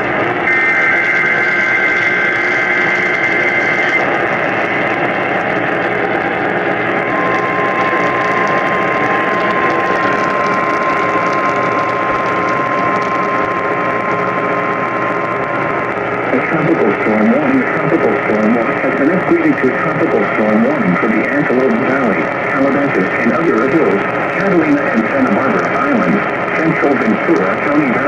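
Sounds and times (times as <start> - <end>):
steady alarm tone: 0.0 - 13.3
radio static hiss: 0.0 - 28.0.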